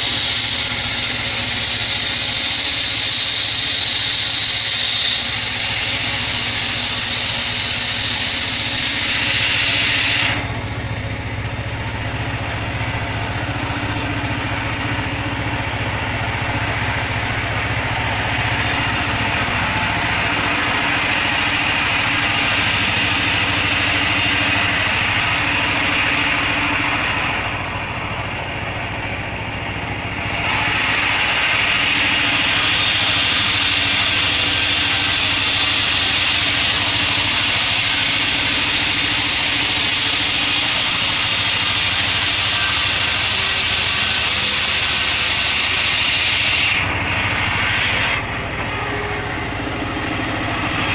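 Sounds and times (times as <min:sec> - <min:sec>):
hiss of bandsaw sawing: 0:00.0 - 0:10.5, 0:18.4 - 0:27.2, 0:30.4 - 0:50.9
engine drone: 0:00.0 - 0:50.9.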